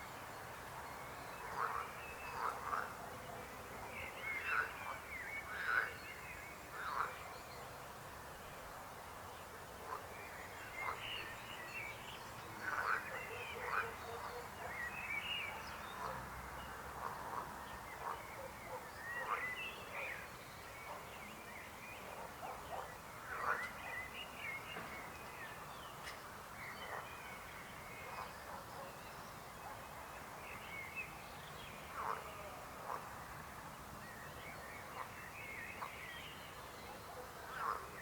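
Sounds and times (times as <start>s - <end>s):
frogs croaking: 4.5s - 6.0s, 12.6s - 14.0s.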